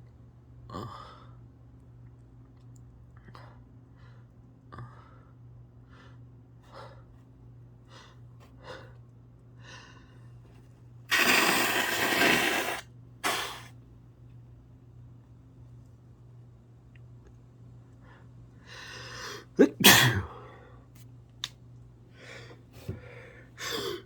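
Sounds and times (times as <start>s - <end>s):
person sneezing: 11.1s - 13.7s, 19.3s - 20.4s.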